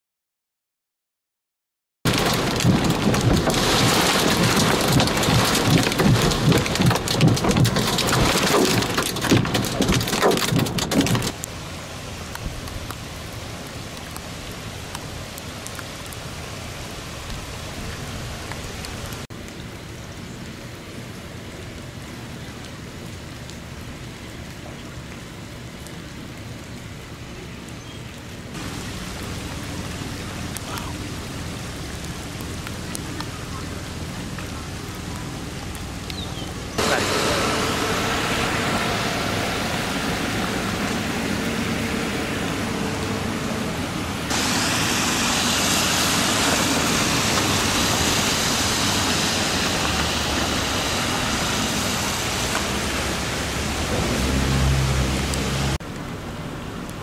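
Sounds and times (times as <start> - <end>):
hail pelting: 2.1 - 11.4, 28.6 - 55.8
heavy rain: 2.1 - 57.0.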